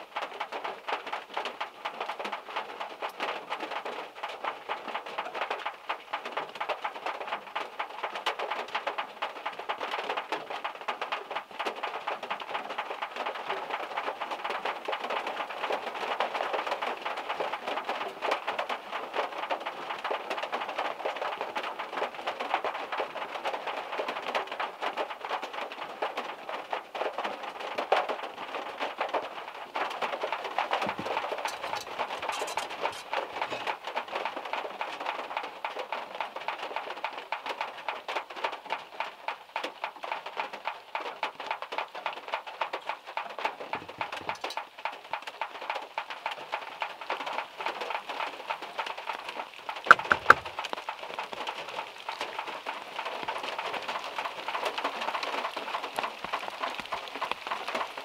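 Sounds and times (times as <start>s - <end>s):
rain on a car: 0.0s - 58.0s
drops from trees hitting car: 49.9s - 50.6s.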